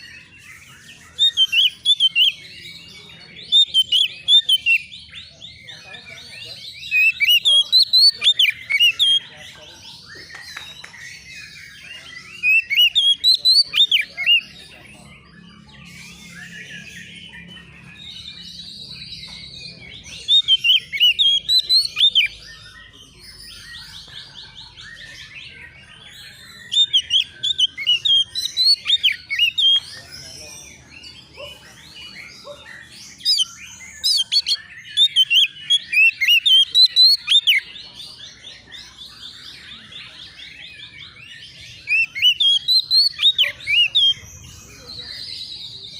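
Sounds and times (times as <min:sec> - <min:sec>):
soft bird chirping and trills: 0:00.0 - 0:45.9.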